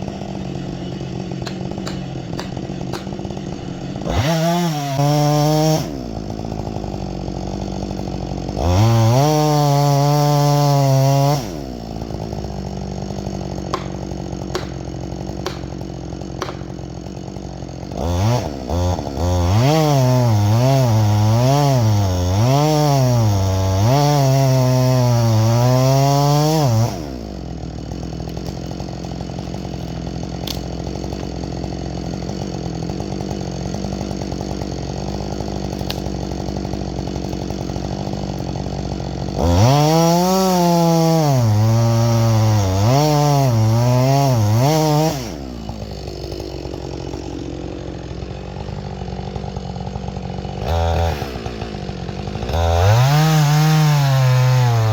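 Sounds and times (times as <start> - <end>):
chainsaw idling and revving: 0.0 - 54.9.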